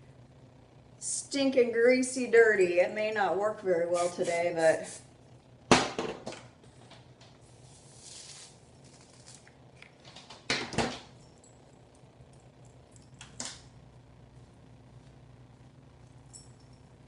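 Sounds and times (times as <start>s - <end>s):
crimping iron hissing: 3.8s - 5.1s.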